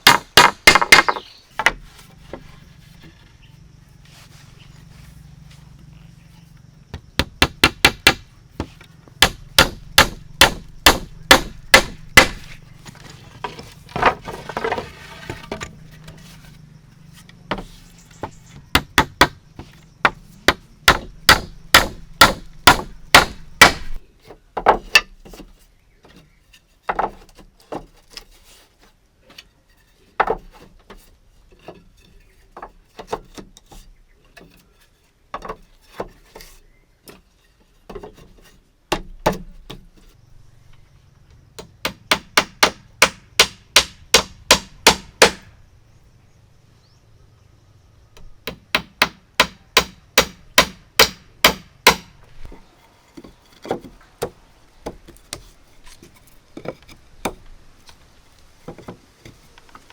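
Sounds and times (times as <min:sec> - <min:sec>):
tool striking wood: 0:00.0 - 0:01.8, 0:06.9 - 0:12.6, 0:17.5 - 0:24.0, 0:41.6 - 0:45.5, 0:48.4 - 0:52.6.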